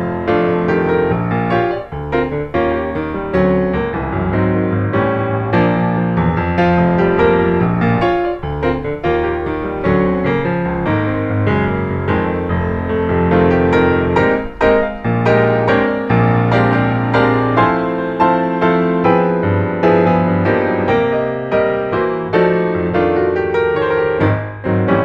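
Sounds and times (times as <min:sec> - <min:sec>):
piano music: 0:00.0 - 0:25.0.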